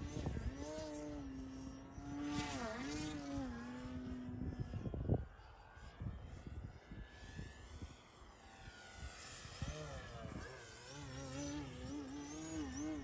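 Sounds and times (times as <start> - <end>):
wind buffeting microphone: 0.0 - 8.0
model plane motor buzzing: 0.0 - 13.0.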